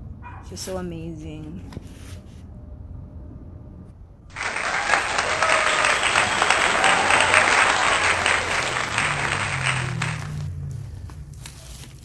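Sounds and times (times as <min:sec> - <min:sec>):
crowd clapping: 0:04.3 - 0:10.7
faint cheering: 0:04.3 - 0:10.9.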